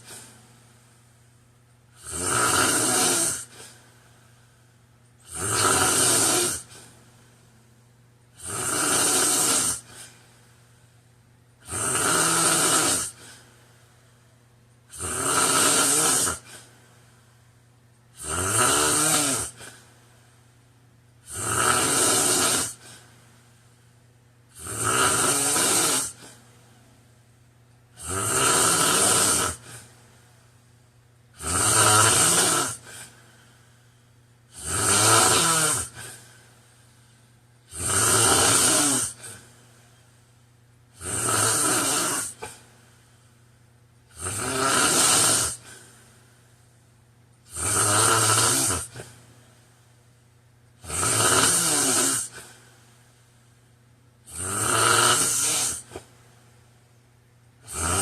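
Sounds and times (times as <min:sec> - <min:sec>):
quiet breathing: 0:00.0 - 0:02.0, 0:03.1 - 0:05.6, 0:06.3 - 0:08.6, 0:09.3 - 0:11.7, 0:13.0 - 0:15.0, 0:16.1 - 0:18.2, 0:19.0 - 0:21.3, 0:22.4 - 0:24.7, 0:25.4 - 0:27.9, 0:29.0 - 0:31.4, 0:32.3 - 0:34.7, 0:35.3 - 0:37.8, 0:38.7 - 0:41.0, 0:42.0 - 0:44.2, 0:45.4 - 0:47.4, 0:51.8 - 0:53.9
man snoring: 0:02.0 - 0:03.8, 0:05.2 - 0:06.9, 0:08.4 - 0:10.1, 0:11.6 - 0:13.4, 0:14.9 - 0:16.7, 0:18.2 - 0:19.8, 0:21.2 - 0:23.0, 0:24.5 - 0:26.4, 0:28.0 - 0:29.9, 0:31.4 - 0:33.2, 0:34.5 - 0:36.2, 0:37.7 - 0:39.4, 0:41.0 - 0:42.6, 0:44.1 - 0:45.8, 0:47.5 - 0:49.1, 0:50.8 - 0:52.6, 0:54.3 - 0:56.0, 0:57.6 - 0:58.0.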